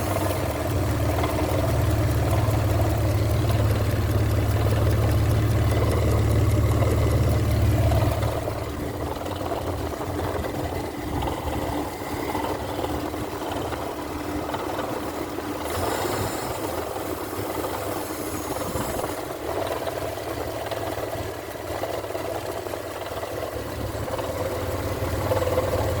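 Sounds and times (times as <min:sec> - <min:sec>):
hiss: 0:00.0 - 0:00.6, 0:15.6 - 0:19.3
car engine running: 0:00.0 - 0:26.0.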